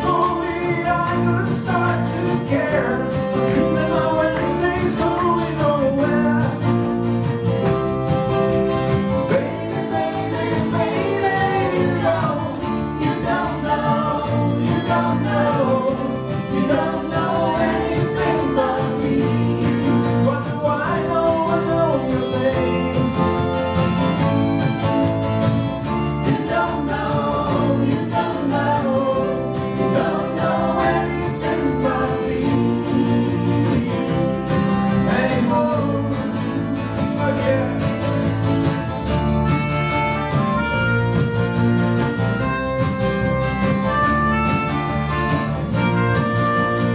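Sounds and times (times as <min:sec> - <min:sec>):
voices singing: 0:00.0 - 0:07.0, 0:09.0 - 0:25.2, 0:25.8 - 0:38.8
guitar accompaniment: 0:00.0 - 0:46.9.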